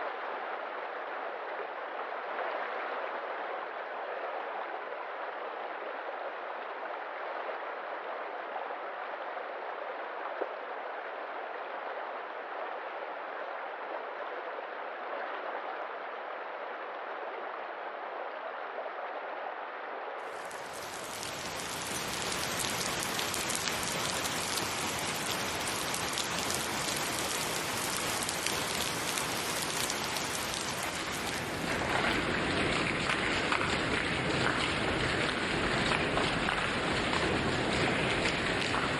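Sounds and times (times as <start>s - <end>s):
falling rain: 20.2s - 38.9s
stream water flowing: 20.3s - 38.9s.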